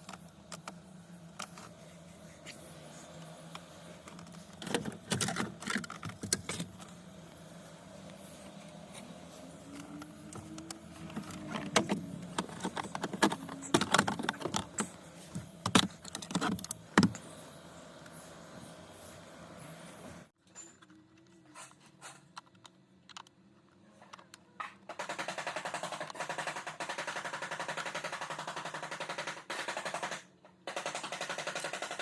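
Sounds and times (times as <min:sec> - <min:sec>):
small hard parts clicking and rattling: 0:09.6 - 0:17.2.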